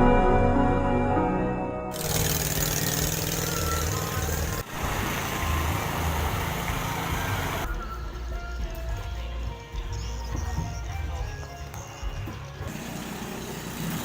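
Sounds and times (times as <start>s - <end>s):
engine running: 1.9s - 7.8s, 12.6s - 14.0s.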